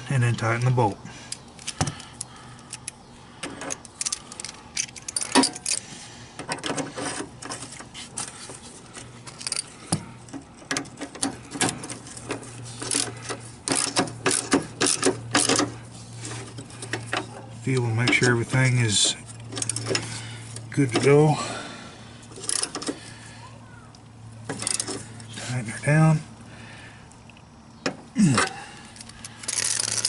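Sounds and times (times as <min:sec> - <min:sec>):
ratchet wrench clicking: 0:29.0 - 0:30.0.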